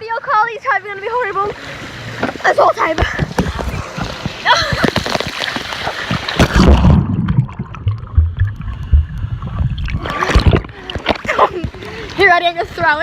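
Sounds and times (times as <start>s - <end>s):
water splashing against case: 2.2s - 8.7s, 9.6s - 13.0s
muffled underwater thuds: 2.2s - 13.0s
loud splash: 4.5s - 8.8s, 9.4s - 11.5s.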